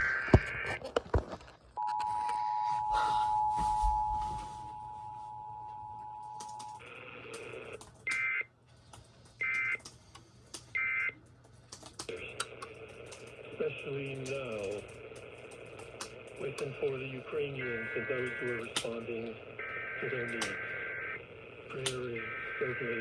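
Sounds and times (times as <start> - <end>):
two-tone attention signal: 1.8 - 6.8.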